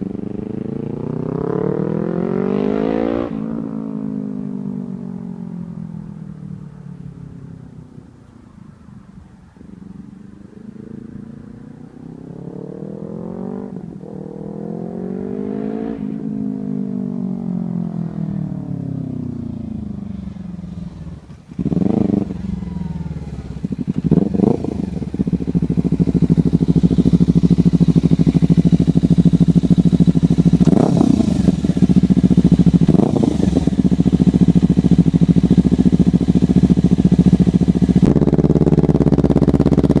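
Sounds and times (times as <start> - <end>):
motorcycle engine revving: 0.0 - 4.7, 10.6 - 40.0
motorcycle engine idling: 18.6 - 40.0
motorcycle throttle blips: 20.4 - 40.0.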